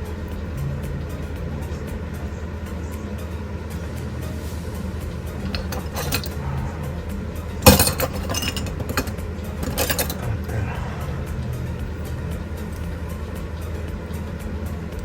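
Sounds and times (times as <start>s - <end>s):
small metal tools clinking: 5.4s - 6.6s, 7.6s - 10.8s.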